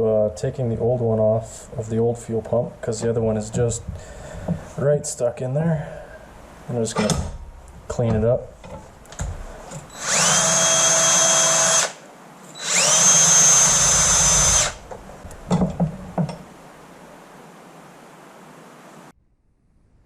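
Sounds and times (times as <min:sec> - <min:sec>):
high-speed power tool whine: 0:09.9 - 0:12.0, 0:12.6 - 0:14.8.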